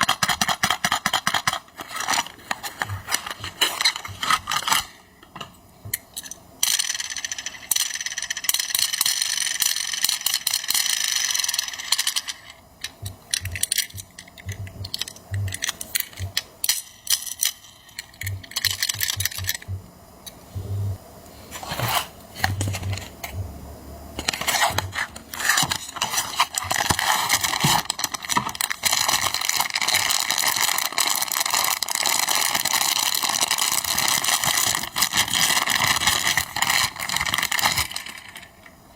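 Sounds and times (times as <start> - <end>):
small clicks and rattles: 0.0 - 19.8
packaging crinkling: 1.5 - 5.0, 24.2 - 38.5.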